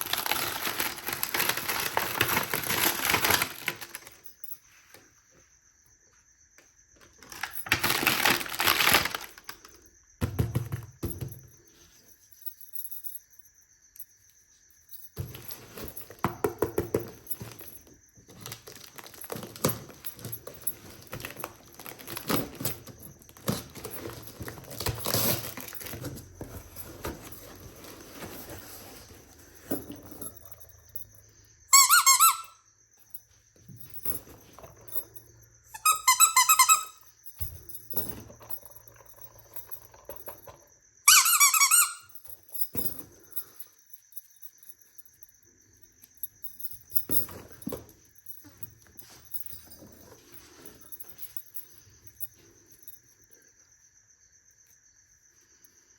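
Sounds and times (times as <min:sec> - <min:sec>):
plastic toys rustling and clattering: 0:00.0 - 0:04.6, 0:07.0 - 0:09.9, 0:14.9 - 0:32.2, 0:33.6 - 0:43.6, 0:46.2 - 0:53.0.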